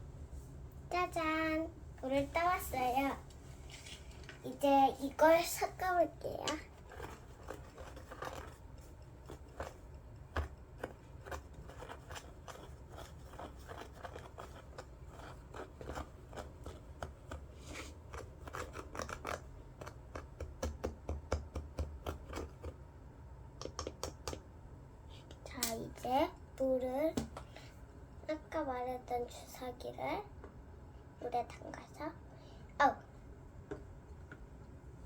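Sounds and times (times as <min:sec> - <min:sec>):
spoon scraping in cup: 0:06.6 - 0:19.4.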